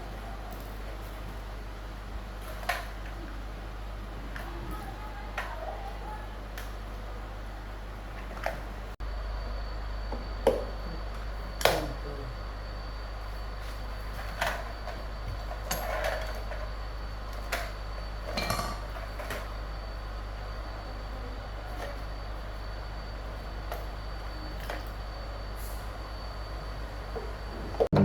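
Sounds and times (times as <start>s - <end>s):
steady low hum: 0.0s - 28.0s
metal tools clinking: 18.3s - 19.0s.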